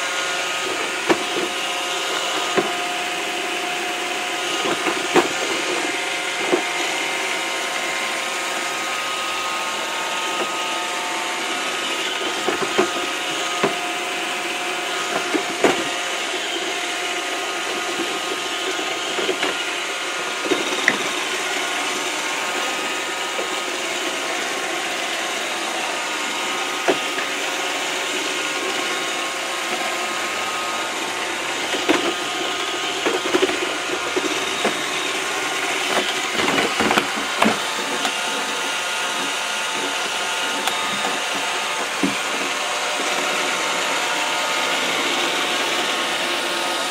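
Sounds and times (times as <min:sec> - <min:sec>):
robot vacuum whirring: 0:00.0 - 0:46.9
robot vacuum bumping walls: 0:09.7 - 0:46.9.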